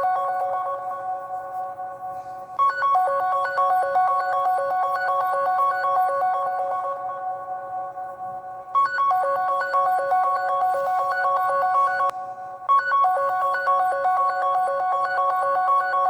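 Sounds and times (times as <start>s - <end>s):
phone ringtone melody: 8.9s - 12.1s.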